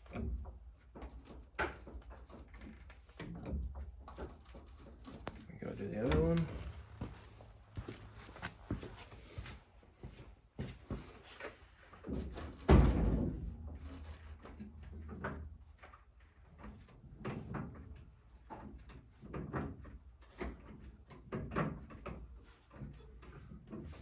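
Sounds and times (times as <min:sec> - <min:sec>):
metal knocks and clanks: 0:12.0 - 0:15.8
loud thud: 0:12.7 - 0:13.6.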